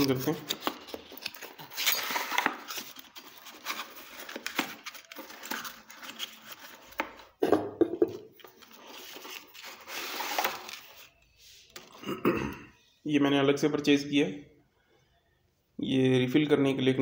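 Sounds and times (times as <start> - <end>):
packaging rustling and crinkling: 0.0 - 7.4, 8.3 - 12.0.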